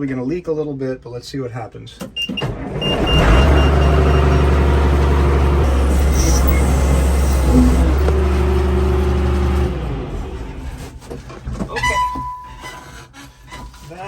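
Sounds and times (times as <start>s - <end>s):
diesel engine at high revs: 2.5s - 11.3s.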